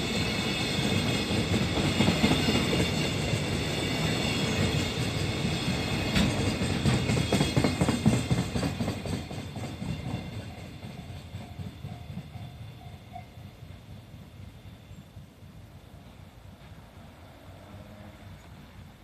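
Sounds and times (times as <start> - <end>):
train wheels clattering over rails: 0.0 - 13.5.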